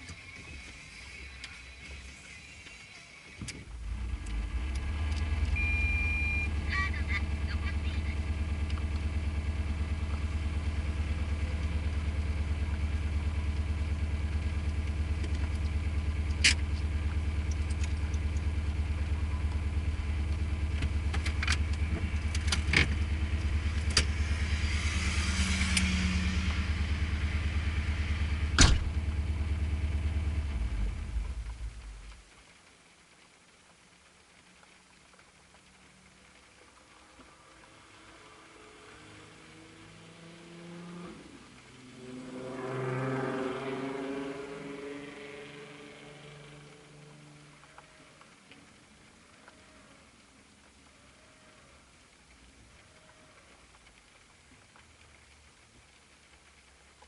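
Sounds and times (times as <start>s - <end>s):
vehicle engine running: 0.0s - 57.0s
short high beep: 5.6s - 6.6s.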